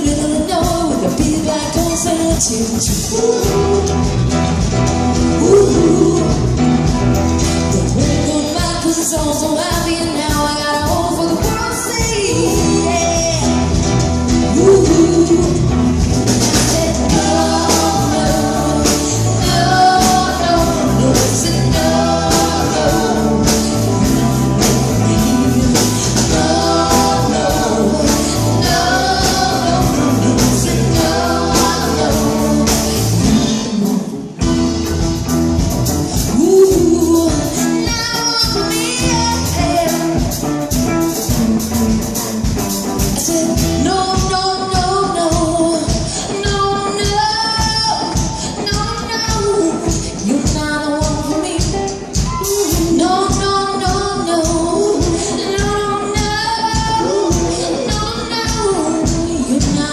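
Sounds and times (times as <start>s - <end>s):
person singing: 0.0s - 4.3s, 5.4s - 6.7s, 14.5s - 15.8s, 16.5s - 34.5s, 43.2s - 59.9s
live band playing: 0.0s - 59.9s.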